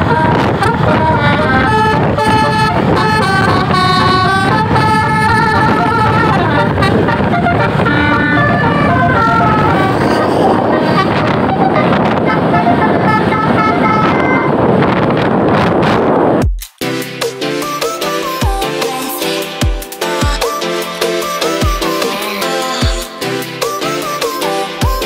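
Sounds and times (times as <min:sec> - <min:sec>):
multi-tone musical bus horn: 0:00.0 - 0:16.4, 0:17.6 - 0:25.0
engine and road noise: 0:00.0 - 0:25.0.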